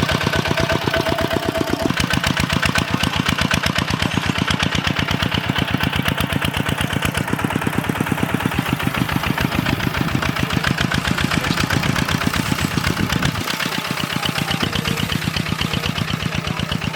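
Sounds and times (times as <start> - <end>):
walking tractor engine chugging: 0.0 - 16.9.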